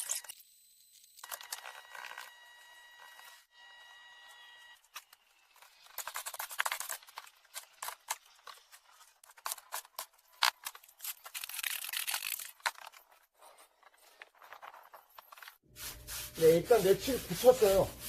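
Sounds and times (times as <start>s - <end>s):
trowel scraping mortar: 15.2s - 18.0s.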